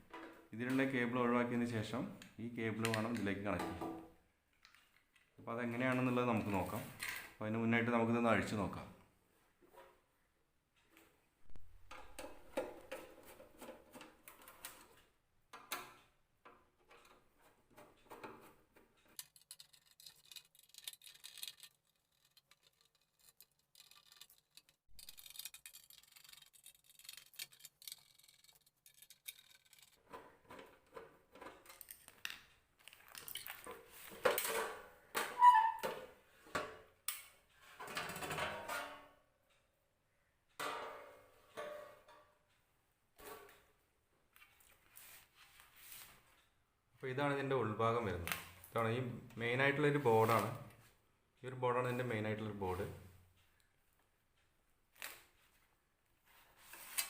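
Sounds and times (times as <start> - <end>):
metal casing clicks and scrapes: 11.9 - 35.9.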